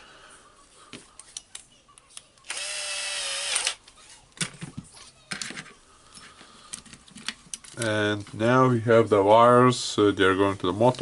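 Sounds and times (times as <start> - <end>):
small electric screwdriver running: 2.4 - 3.8
small parts clicking and knocking: 4.4 - 8.0.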